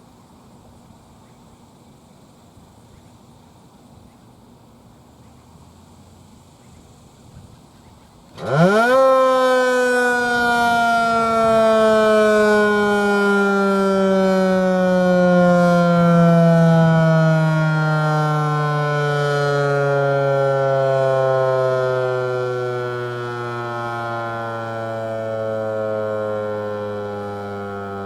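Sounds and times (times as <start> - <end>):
tornado siren winding: 8.4 - 28.0.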